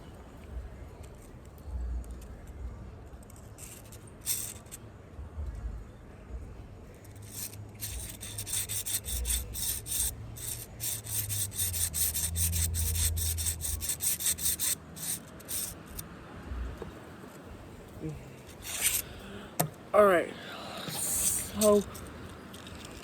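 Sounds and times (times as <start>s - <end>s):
fidget toy scratchy rubbing: 3.3s - 4.8s, 7.0s - 23.0s.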